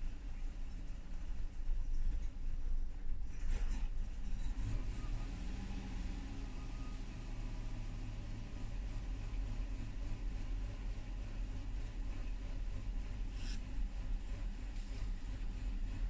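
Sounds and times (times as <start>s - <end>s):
car engine idling roughly: 7.4s - 16.0s.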